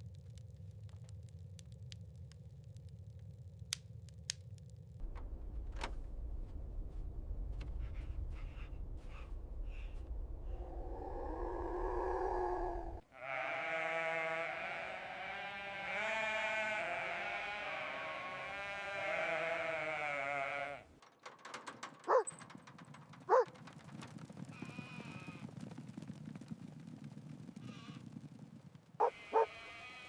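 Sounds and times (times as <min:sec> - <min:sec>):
animal bleat-like cries: 0:13.1 - 0:20.9, 0:29.0 - 0:30.0
short sharp animal calls: 0:29.0 - 0:29.9.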